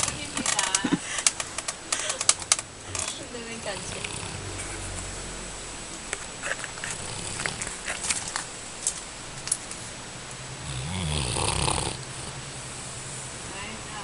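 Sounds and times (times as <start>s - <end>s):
slow snore: 3.7s - 4.8s, 10.6s - 13.0s.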